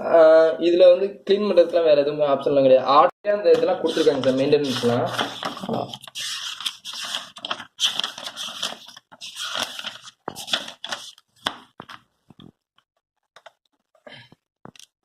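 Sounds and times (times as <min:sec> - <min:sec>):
rustling and handling noise: 0:03.5 - 0:12.6.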